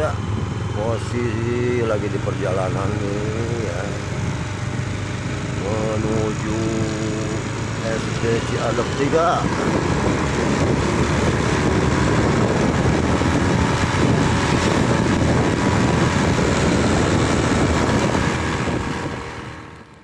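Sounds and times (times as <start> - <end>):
vehicle road noise: 0.0 - 20.0
wind buffeting microphone: 0.0 - 20.0.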